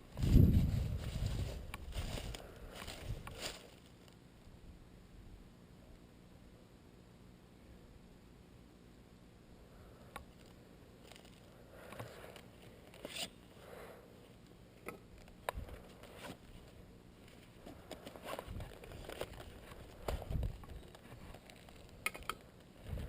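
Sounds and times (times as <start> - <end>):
faint rustling and scraping: 0.0 - 4.2, 15.1 - 23.0.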